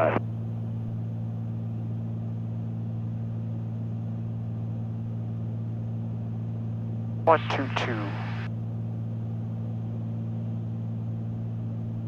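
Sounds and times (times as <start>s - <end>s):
propeller plane engines droning: 7.2s - 8.5s.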